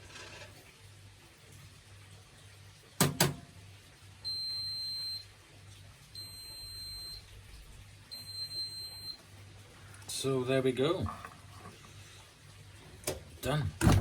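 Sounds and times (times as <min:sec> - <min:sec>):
washing machine high beeps: 0:04.2 - 0:09.4.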